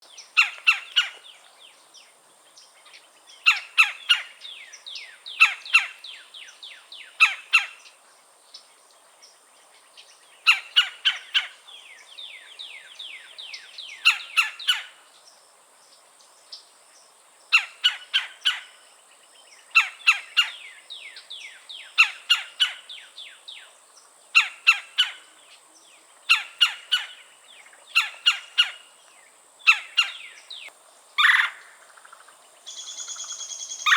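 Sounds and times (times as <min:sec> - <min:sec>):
woodpecker calls: 0:00.2 - 0:01.5, 0:03.4 - 0:06.5, 0:07.1 - 0:08.0, 0:10.4 - 0:11.7, 0:13.2 - 0:15.0, 0:17.5 - 0:18.8, 0:19.7 - 0:23.1, 0:24.4 - 0:25.4, 0:26.3 - 0:28.9, 0:29.6 - 0:33.9.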